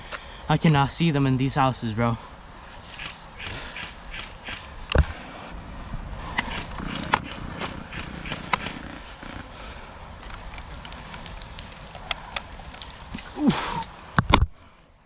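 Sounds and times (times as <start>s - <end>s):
sharp cracks: 2.9s - 5.1s, 6.3s - 14.5s
footsteps: 6.7s - 13.6s.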